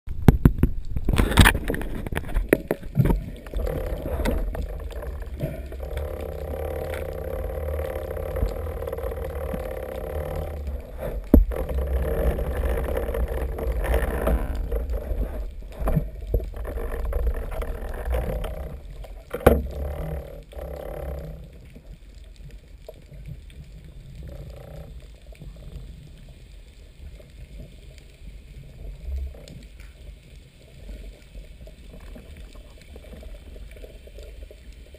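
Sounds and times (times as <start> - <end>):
boat engine rumbling: 1.6 - 21.6.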